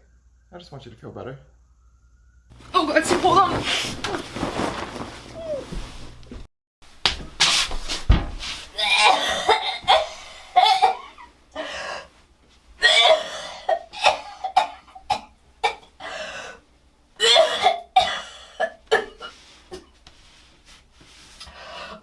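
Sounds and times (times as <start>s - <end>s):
woman coughing: 8.8s - 11.3s, 12.8s - 15.9s, 17.2s - 19.8s.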